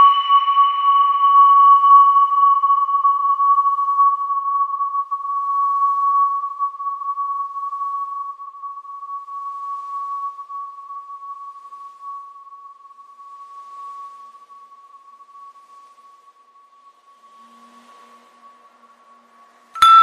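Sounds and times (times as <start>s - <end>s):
wind chime ringing: 19.8s - 20.0s.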